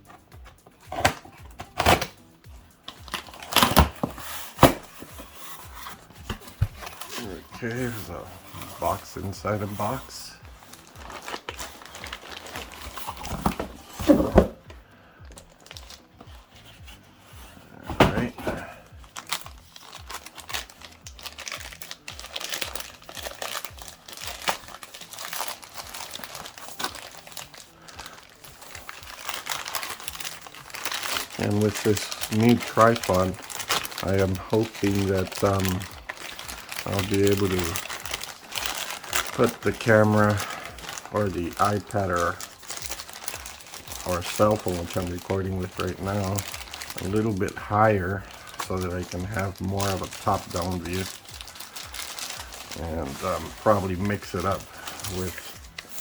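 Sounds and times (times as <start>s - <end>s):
packaging crinkling and rustling: 0.0s - 2.2s, 2.8s - 56.0s
cardboard box scraping and rustling: 11.1s - 14.6s.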